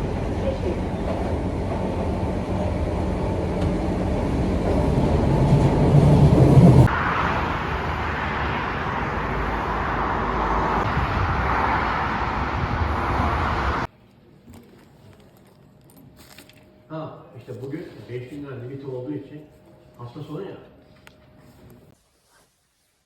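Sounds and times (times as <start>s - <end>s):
vehicle rumble and road noise: 0.0s - 13.9s.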